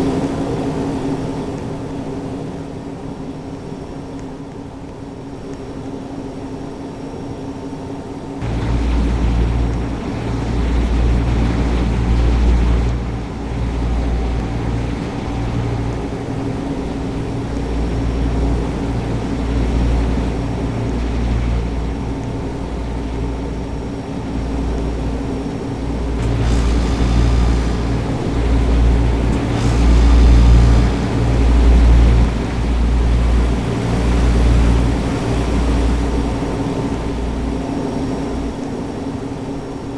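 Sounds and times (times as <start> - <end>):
air conditioner unit humming: 7.0 - 39.9
heavy low rumble: 8.4 - 38.6.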